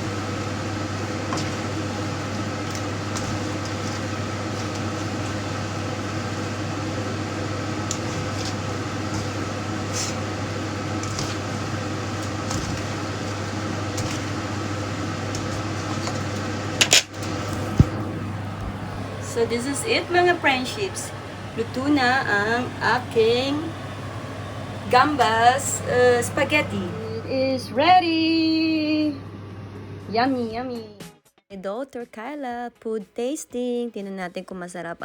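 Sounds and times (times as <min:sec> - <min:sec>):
steady mechanical hum: 0:00.0 - 0:31.0.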